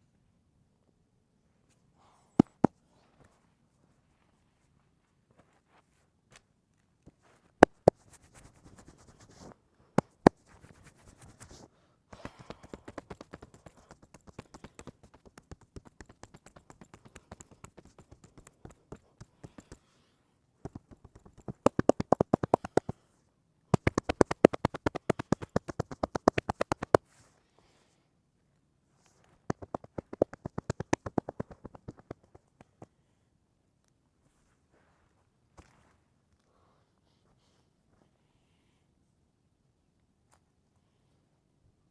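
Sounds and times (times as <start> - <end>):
hands slapping: 2.4 - 2.7, 7.6 - 11.6, 12.2 - 19.8, 20.6 - 23.0, 23.8 - 27.0, 29.5 - 32.9
rapid hand tapping: 7.6 - 9.1, 12.2 - 19.8, 20.6 - 23.0, 23.8 - 27.0, 29.5 - 32.9.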